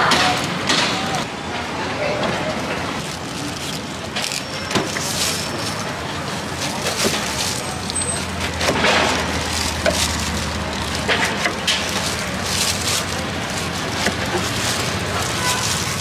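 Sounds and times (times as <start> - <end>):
clatter of clicks and knocks: 6.6 - 16.0.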